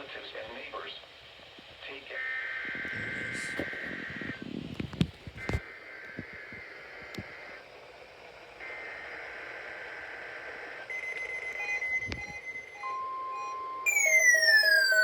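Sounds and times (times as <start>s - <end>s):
buzzy data squawks: 2.1s - 4.4s, 10.9s - 15.0s
short beeps: 10.9s - 15.0s
steady tone: 10.9s - 15.0s.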